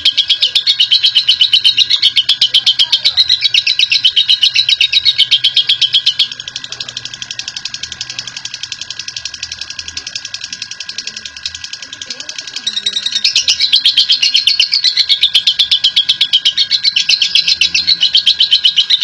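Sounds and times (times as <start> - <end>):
lovebird chattering trill: 0.0 - 19.0.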